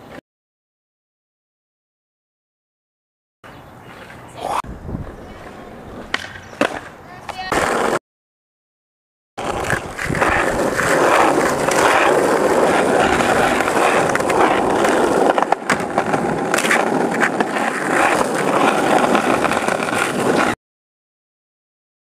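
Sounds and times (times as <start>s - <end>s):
skateboard wheels rolling on pavement: 3.5s - 8.0s, 9.4s - 20.6s
skateboard clicks and knocks: 5.0s - 8.0s, 9.4s - 20.6s.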